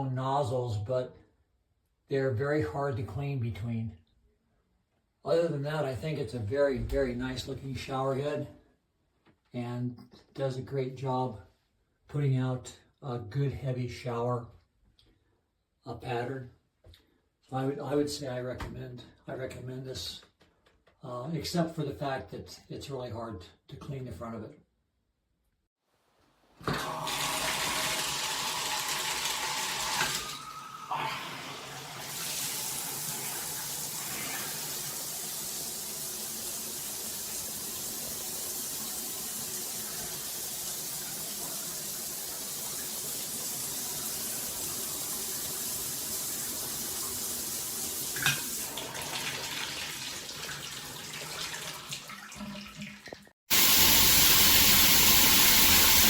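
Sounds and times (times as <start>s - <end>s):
rain shower head spraying water: 53.5s - 56.0s.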